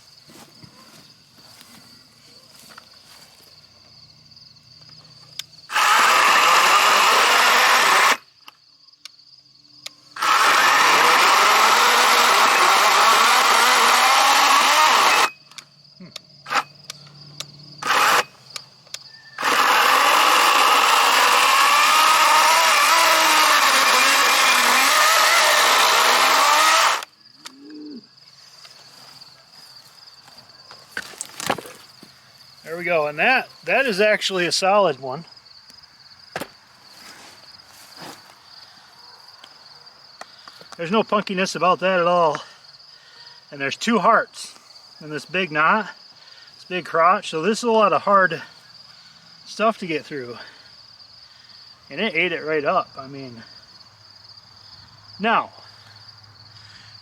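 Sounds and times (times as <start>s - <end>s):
electric chainsaw cutting log: 5.7s - 8.3s, 10.2s - 15.4s, 16.5s - 16.7s, 17.8s - 18.3s, 19.4s - 27.1s.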